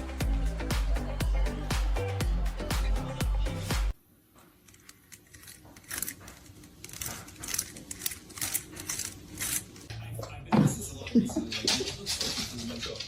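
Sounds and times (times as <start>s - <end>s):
dance music: 0.0s - 4.0s.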